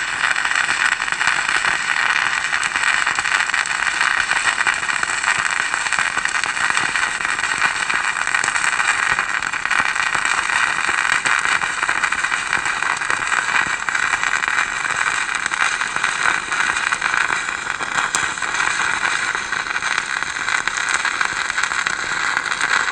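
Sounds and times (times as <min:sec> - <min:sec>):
welding arc crackling: 0:00.0 - 0:22.9.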